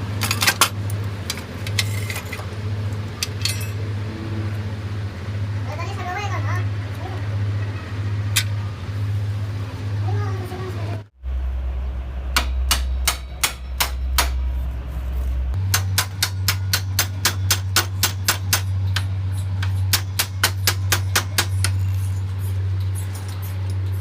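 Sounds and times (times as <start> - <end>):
hammer tapping on metal: 12.4 - 14.5, 15.6 - 21.8.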